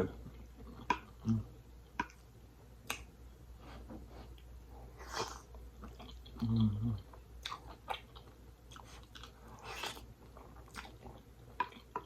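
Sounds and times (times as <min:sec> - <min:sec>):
wet chewing clicks and smacks: 0:00.7 - 0:03.1, 0:07.4 - 0:12.0.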